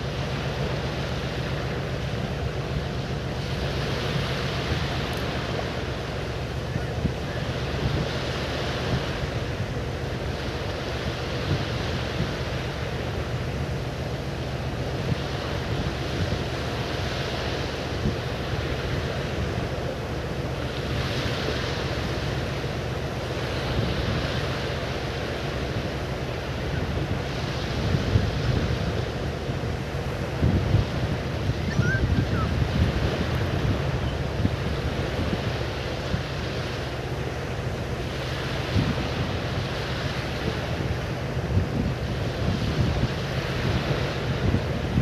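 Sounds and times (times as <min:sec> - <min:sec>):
surf rushing: 0:00.0 - 0:45.0
wind buffeting microphone: 0:26.6 - 0:36.6, 0:38.1 - 0:45.0.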